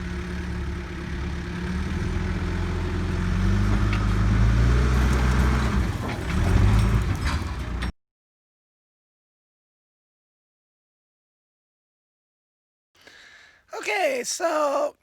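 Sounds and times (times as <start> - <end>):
backhoe engine revving: 0.0 - 7.9.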